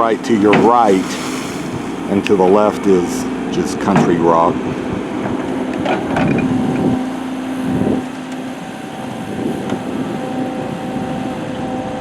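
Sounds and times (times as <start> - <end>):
bucket digging rock: 0.0 - 3.2.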